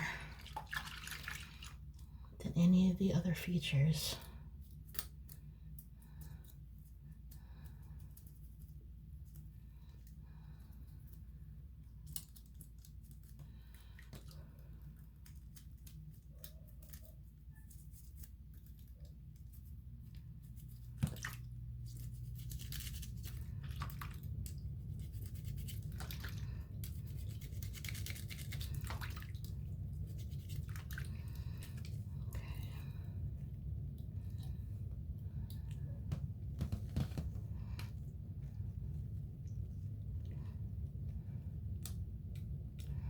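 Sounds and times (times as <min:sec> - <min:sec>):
low hum: 0:17.4 - 0:43.0.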